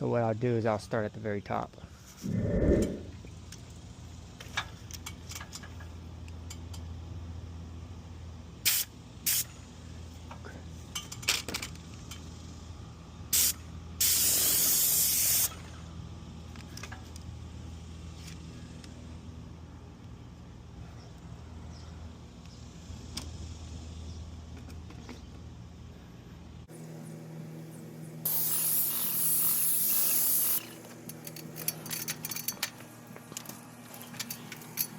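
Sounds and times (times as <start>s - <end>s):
low hum: 2.2s - 3.4s
paint sprayer hissing: 28.3s - 30.8s.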